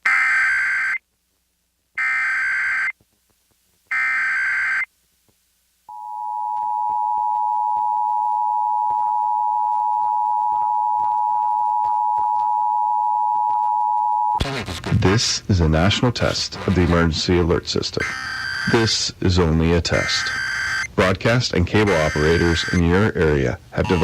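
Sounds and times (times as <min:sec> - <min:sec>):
warbling data tone bursts: 0:03.9 - 0:04.9, 0:18.0 - 0:20.9, 0:21.8 - 0:23.0, 0:23.8 - 0:24.0
two-tone attention signal: 0:05.9 - 0:14.4, 0:21.8 - 0:22.8, 0:23.8 - 0:24.0.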